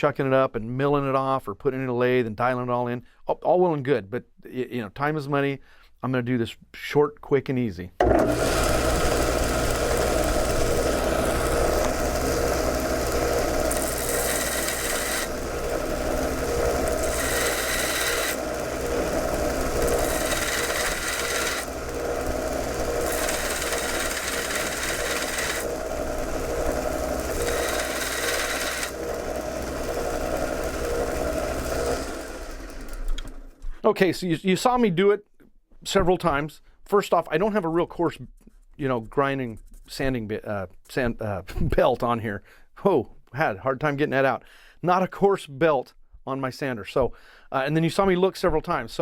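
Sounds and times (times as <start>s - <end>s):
metal grinding on sander belt: 8.0s - 33.2s
belt sander running: 8.0s - 33.6s.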